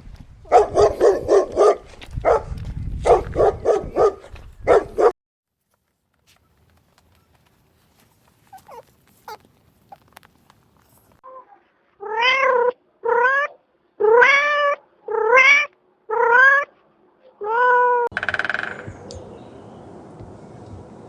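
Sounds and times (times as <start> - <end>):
small squeaks: 6.3 - 12.7
cat meowing: 12.0 - 16.7.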